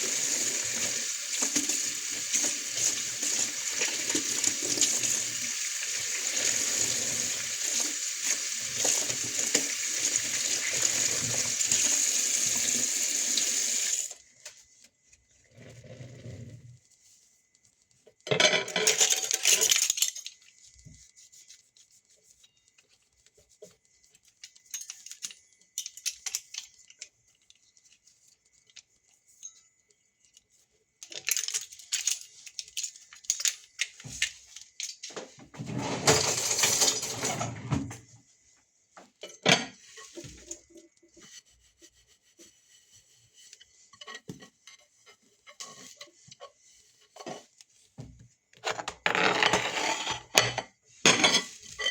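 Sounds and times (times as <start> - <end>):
dishes and cutlery clinking: 18.3 - 20.3, 49.6 - 51.9.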